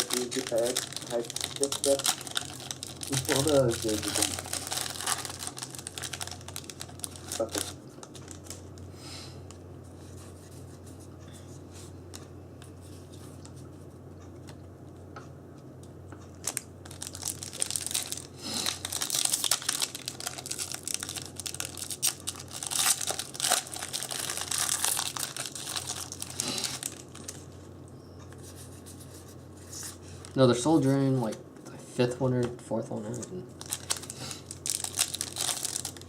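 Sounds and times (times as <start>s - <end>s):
foil wrapper tearing and crinkling: 0.0s - 8.7s, 16.4s - 27.4s, 33.1s - 36.0s
low electrical hum: 0.0s - 36.0s.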